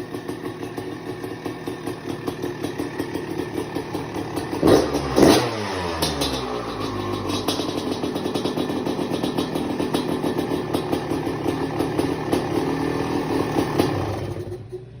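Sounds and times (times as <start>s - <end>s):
two-stroke engine idling unevenly: 0.0s - 15.0s.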